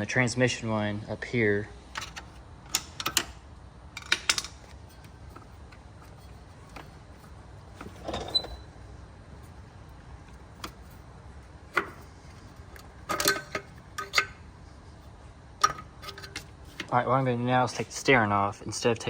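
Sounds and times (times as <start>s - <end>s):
clicks and metal clanks: 1.9s - 8.7s, 10.2s - 11.0s, 11.7s - 14.4s, 15.6s - 17.0s.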